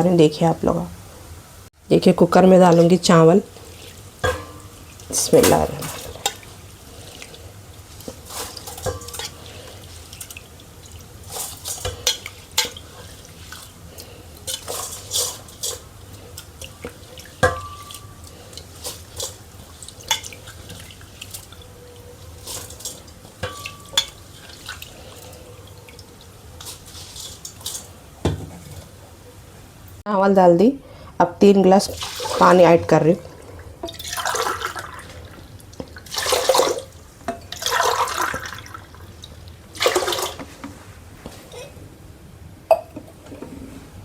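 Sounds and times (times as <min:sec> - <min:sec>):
utensil clinking against pot: 0:04.2 - 0:06.5, 0:14.4 - 0:21.6, 0:22.4 - 0:24.8.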